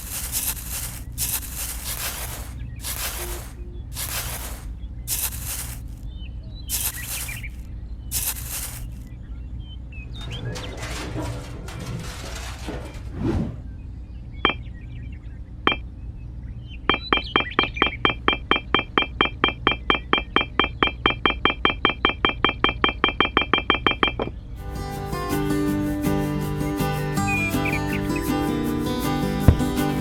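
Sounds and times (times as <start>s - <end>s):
rustling scraping noise: 0.0s - 6.0s, 6.7s - 9.1s, 10.1s - 13.7s, 24.6s - 30.0s
sharp ringing taps: 16.9s - 24.4s.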